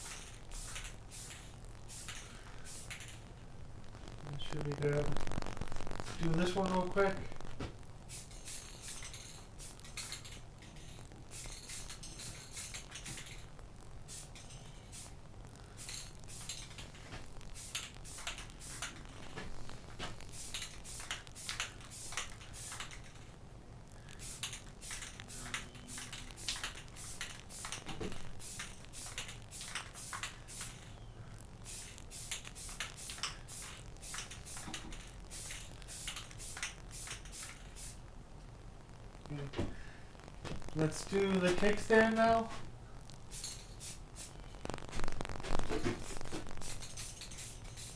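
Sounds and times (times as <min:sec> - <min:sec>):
spray-paint can hissing: 0:00.0 - 0:03.2, 0:08.1 - 0:10.4, 0:11.3 - 0:13.4, 0:14.1 - 0:15.2, 0:15.8 - 0:16.8, 0:17.5 - 0:19.0, 0:20.3 - 0:23.2, 0:24.2 - 0:30.9, 0:31.6 - 0:38.0, 0:43.3 - 0:44.4, 0:46.6 - 0:47.9.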